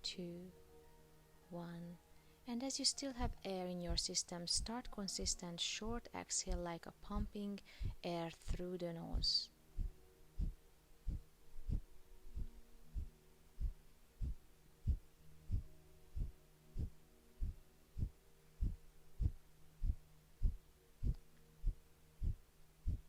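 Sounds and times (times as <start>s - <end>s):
faint steady hum: 0.0s - 23.0s.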